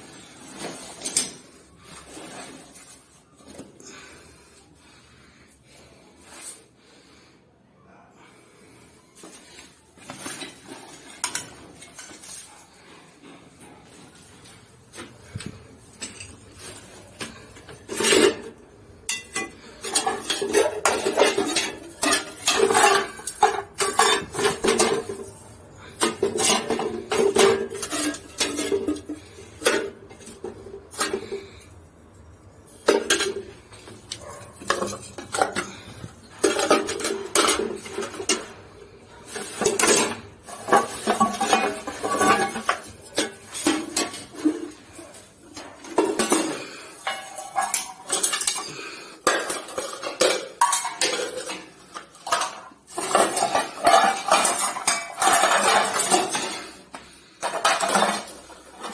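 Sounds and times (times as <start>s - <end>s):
metal cookware clattering: 10.2s - 12.6s, 15.3s - 58.9s.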